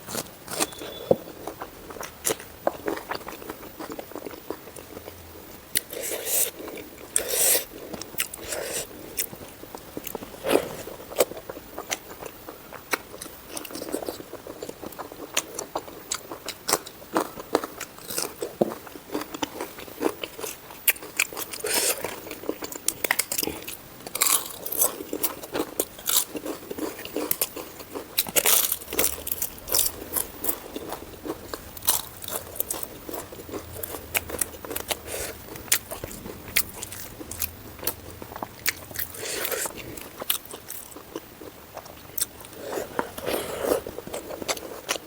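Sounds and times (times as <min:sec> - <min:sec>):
chewing with sharp crunches: 0:00.0 - 0:45.0.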